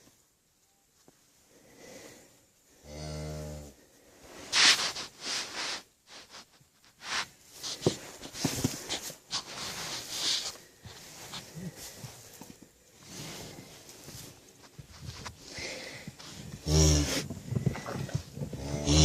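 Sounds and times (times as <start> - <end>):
rustling and scuffing: 4.2 - 19.0
cow mooing: 18.6 - 19.0.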